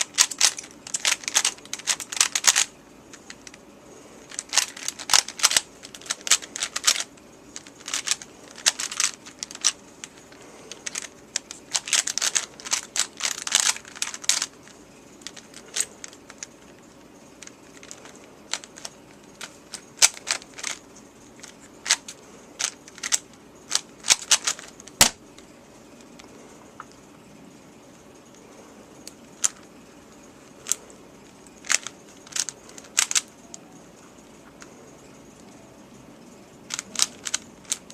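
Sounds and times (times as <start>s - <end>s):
puzzle cube turning clicks: 0.0s - 3.6s, 4.2s - 16.8s, 17.4s - 20.8s, 21.4s - 25.2s, 31.6s - 33.7s, 36.7s - 37.9s.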